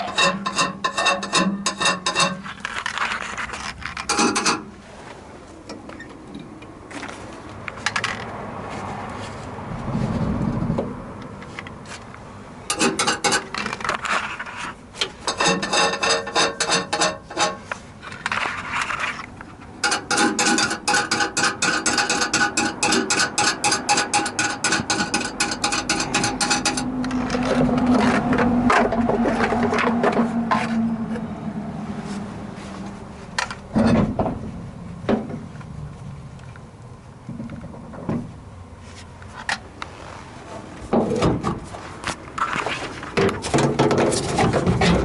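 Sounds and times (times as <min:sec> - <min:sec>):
scraping and rubbing: 0:00.0 - 0:05.2, 0:12.7 - 0:31.0, 0:41.6 - 0:45.0
rapid metallic clicking: 0:19.8 - 0:26.9.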